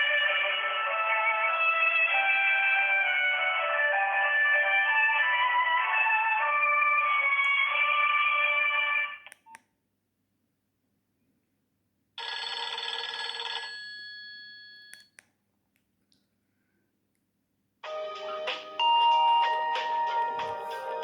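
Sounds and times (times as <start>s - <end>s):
phone ringtone: 0.0s - 9.2s, 12.2s - 15.1s, 17.8s - 21.0s.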